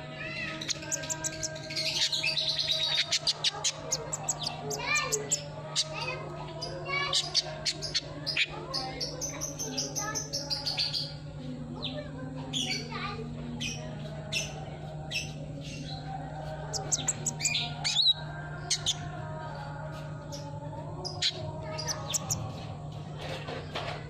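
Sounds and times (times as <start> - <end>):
bird chirping and twittering: 0.0 - 24.0
steady low hum: 0.0 - 24.0.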